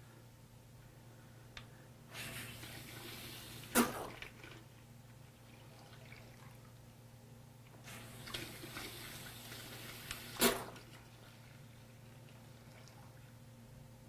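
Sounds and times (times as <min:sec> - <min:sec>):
water rushing through a valve: 0:02.1 - 0:04.6, 0:07.8 - 0:11.2.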